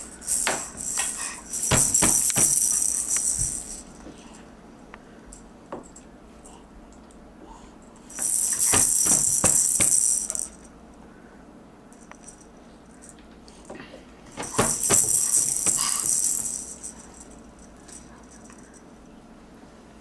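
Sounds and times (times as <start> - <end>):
rattle toy shaking: 0.0 - 4.1, 8.1 - 10.7, 11.9 - 13.7, 14.3 - 18.9
rattle toy knocks: 0.2 - 4.1, 8.1 - 10.7, 13.0 - 17.3.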